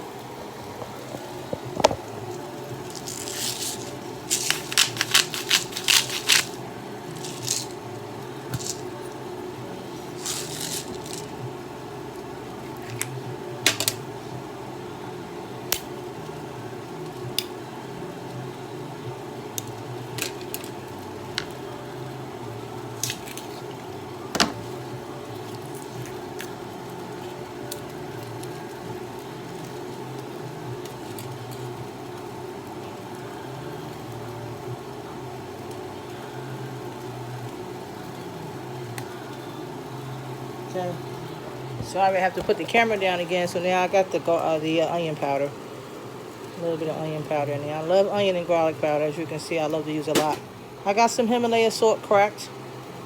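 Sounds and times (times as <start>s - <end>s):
pot cooking hum: 0.0s - 53.0s.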